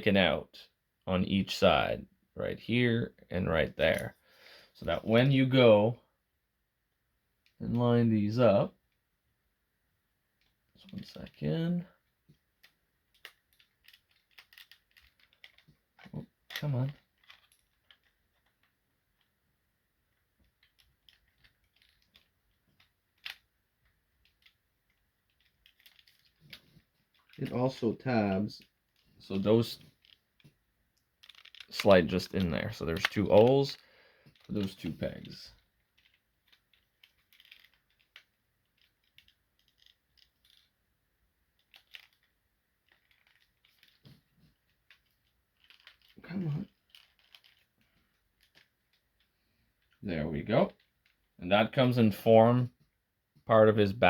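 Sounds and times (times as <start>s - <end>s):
plastic toy parts clicking: 12.6s - 19.3s, 20.1s - 27.8s, 28.5s - 40.8s, 41.6s - 50.0s.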